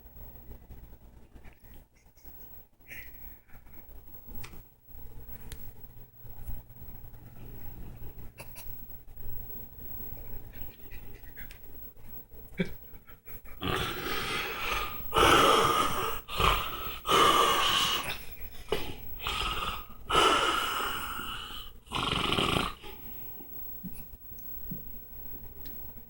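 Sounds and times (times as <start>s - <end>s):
man snoring loudly: 13.6s - 23.0s.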